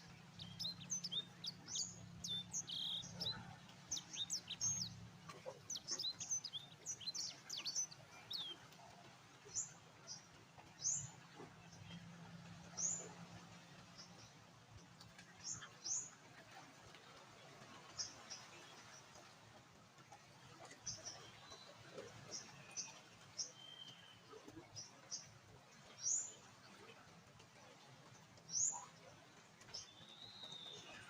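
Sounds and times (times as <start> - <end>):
small birds chirping: 0.0 - 8.6.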